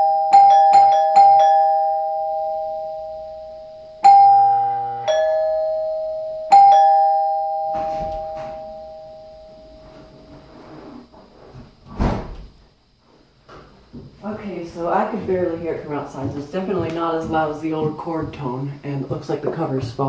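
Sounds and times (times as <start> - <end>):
two-note door chime: 0.0 - 10.0
low hum: 1.5 - 11.6.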